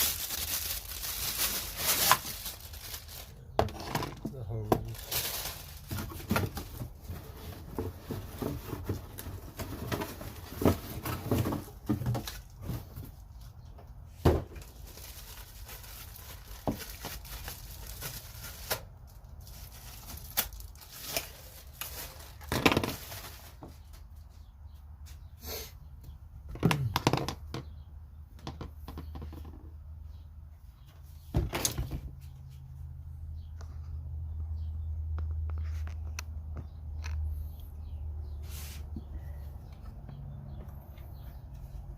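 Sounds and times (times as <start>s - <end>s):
packaging rustling: 0.0s - 4.1s, 4.8s - 11.6s, 14.6s - 23.7s
plastic parts knocking and clicking: 26.5s - 27.8s.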